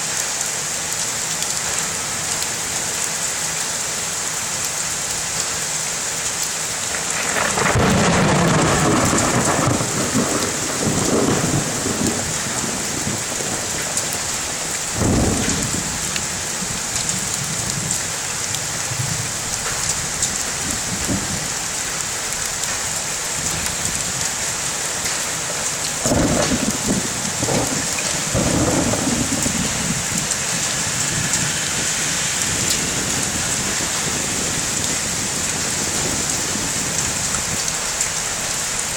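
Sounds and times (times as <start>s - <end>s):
heavy rain falling: 0.0s - 38.9s
rumbling thunder: 7.0s - 18.1s, 18.7s - 21.8s, 25.0s - 38.0s.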